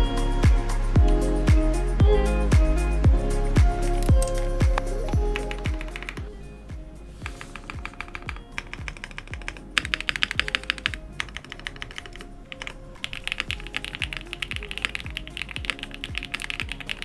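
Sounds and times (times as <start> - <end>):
background music with steady beat: 0.0 - 17.0
mechanical keyboard key clacks: 7.2 - 17.0.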